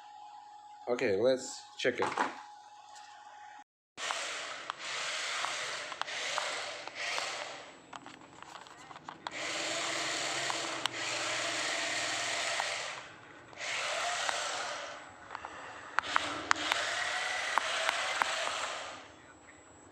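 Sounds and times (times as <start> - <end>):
toy car motors whirring: 4.0 - 19.2.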